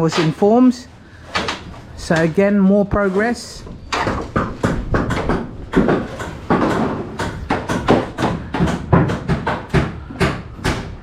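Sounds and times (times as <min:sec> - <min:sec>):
knocks clatters and scrapes: 0:01.2 - 0:09.8.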